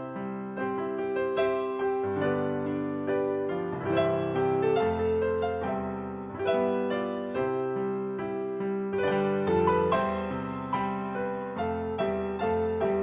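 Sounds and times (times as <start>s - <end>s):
soft piano music: 0.0s - 13.0s.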